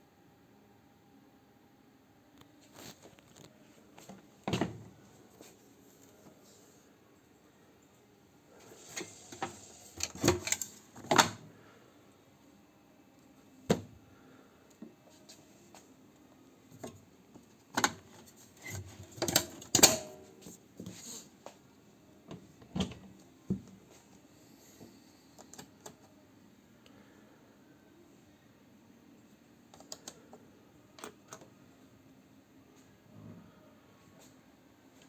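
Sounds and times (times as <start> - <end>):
washing machine clicks and knocks: 10.0 - 11.4, 19.1 - 20.2.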